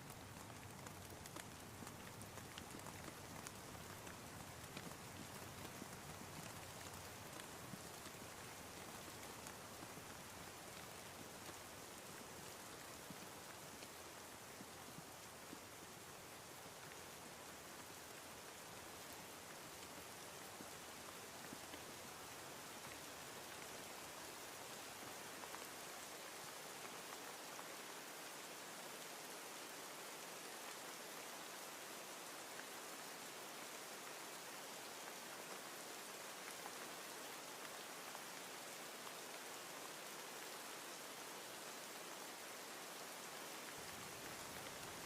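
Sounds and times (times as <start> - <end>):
raindrop ticks: 0.0 - 14.0
faint rain falling: 0.0 - 45.0.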